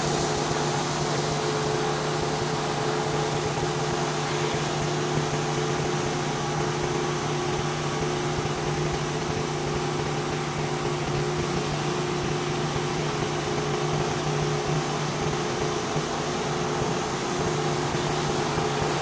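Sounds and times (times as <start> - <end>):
water spraying hiss: 0.0 - 5.8
pressure washer hum: 0.0 - 19.0.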